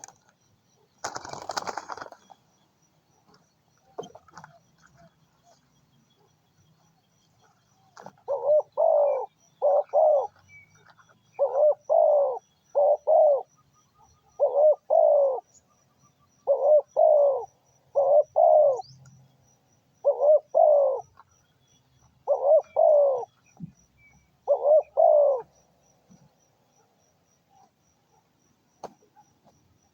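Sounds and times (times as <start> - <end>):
dove cooing: 8.0 - 15.6, 16.4 - 19.0, 20.0 - 21.2, 22.2 - 25.6.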